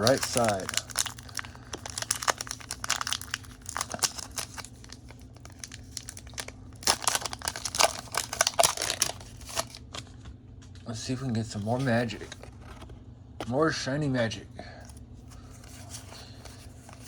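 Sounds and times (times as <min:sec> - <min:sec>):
foil pack tearing open: 0:00.0 - 0:10.0
foil wrapper crinkling: 0:00.0 - 0:10.2.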